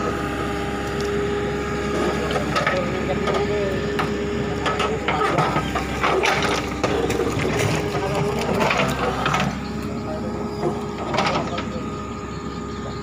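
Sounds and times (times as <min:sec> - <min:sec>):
diesel engine running: 0:00.0 - 0:13.0
knocks and clanks: 0:02.0 - 0:09.7, 0:10.6 - 0:11.8.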